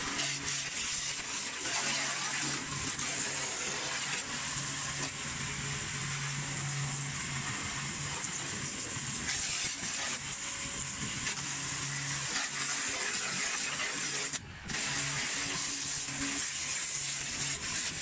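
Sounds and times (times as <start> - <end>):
washer motor hum: 0.0 - 18.0
pressure washer jet hissing: 8.5 - 18.0.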